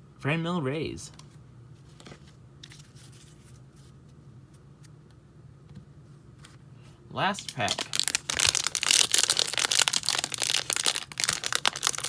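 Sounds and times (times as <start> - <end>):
steady low hum: 0.0 - 12.0
paper cards rustling and ticking: 7.4 - 12.0.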